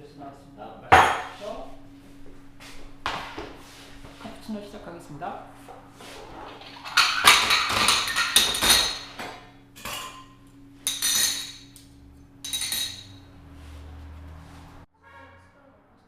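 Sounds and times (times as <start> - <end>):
metal and ceramic clattering: 6.6 - 10.3, 10.9 - 11.7, 12.4 - 13.2.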